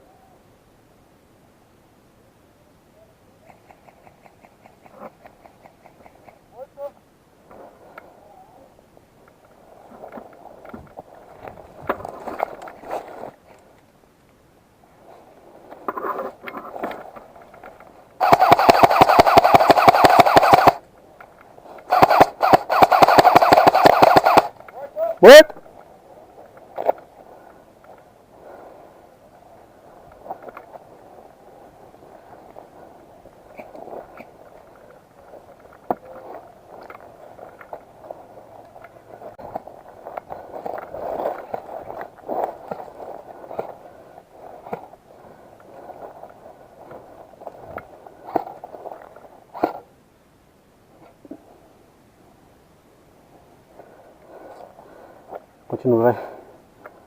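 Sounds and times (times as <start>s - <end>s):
sharp clicks: 17.6s - 24.8s
electric gun firing full auto: 18.2s - 20.8s, 21.9s - 24.6s
soft handling sounds: 25.8s - 49.8s.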